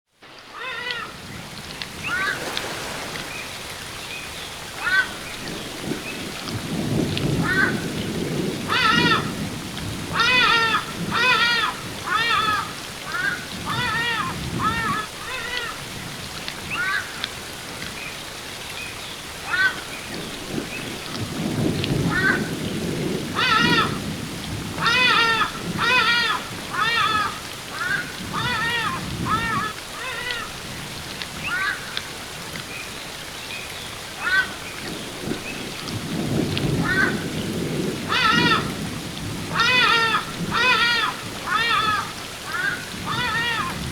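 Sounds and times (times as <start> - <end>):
waterfall rushing: 0.2 - 21.2, 23.3 - 43.9.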